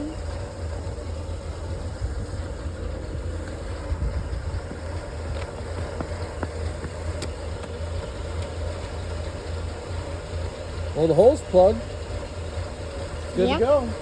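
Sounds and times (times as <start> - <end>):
truck engine idling: 0.0 - 14.0.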